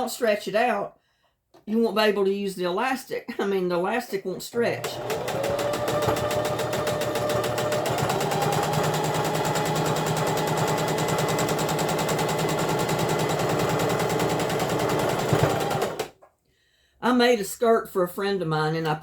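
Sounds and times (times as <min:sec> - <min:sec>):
electric sewing machine running: 0:04.8 - 0:16.1.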